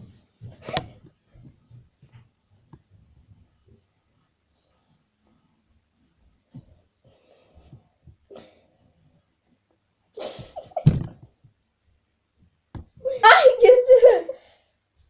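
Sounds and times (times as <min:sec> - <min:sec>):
faint rustles and scratches: 0:00.0 - 0:09.6
child sneezing: 0:10.2 - 0:10.8.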